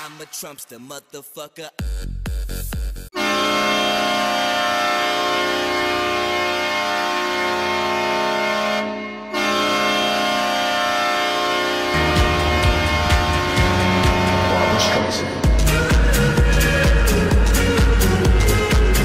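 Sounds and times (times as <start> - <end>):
goal horn blasting: 3.2 - 16.2.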